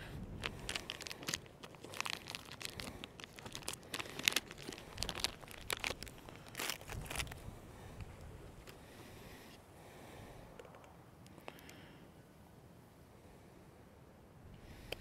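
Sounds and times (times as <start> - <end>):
crinkling and crunching: 0.0 - 8.8.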